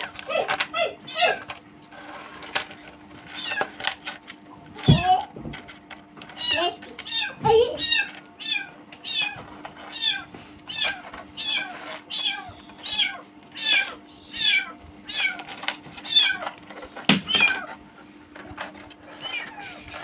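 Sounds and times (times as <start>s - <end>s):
kitten mewing: 6.4s - 17.7s.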